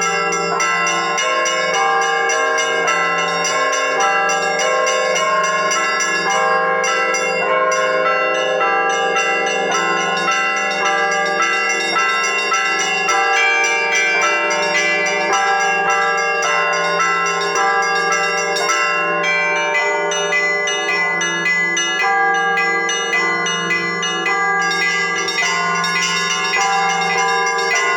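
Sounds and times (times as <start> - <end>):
church bells pealing: 0.0 - 27.9
low large bell humming: 22.0 - 27.9.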